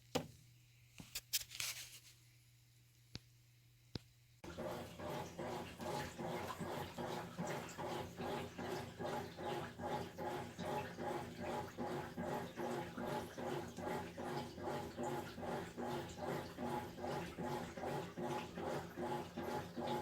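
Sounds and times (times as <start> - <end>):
washing machine motor agitating: 4.4 - 20.0
water swishing in tub: 4.4 - 20.0.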